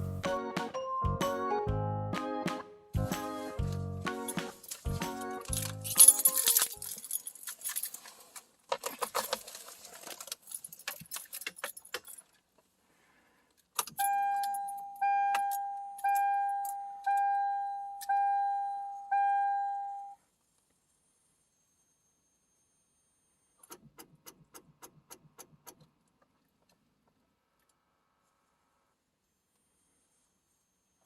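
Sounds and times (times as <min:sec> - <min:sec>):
car keys jangling: 0:04.1 - 0:12.4, 0:13.7 - 0:18.3
car warning chime dings: 0:14.0 - 0:20.2.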